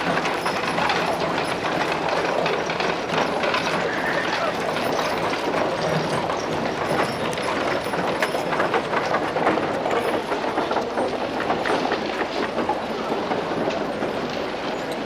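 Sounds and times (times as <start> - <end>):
horse-drawn carriage rattling: 0.0 - 15.0.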